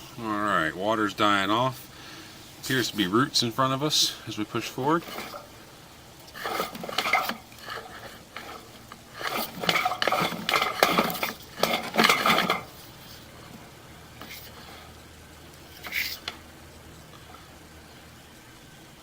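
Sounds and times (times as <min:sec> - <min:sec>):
metallic clattering and clinking: 0:05.0 - 0:05.5, 0:06.3 - 0:13.6.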